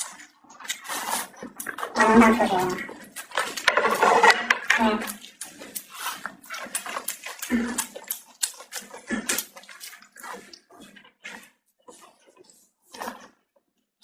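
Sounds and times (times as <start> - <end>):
wet chewing and lip smacking: 0.0 - 3.8, 5.0 - 13.6.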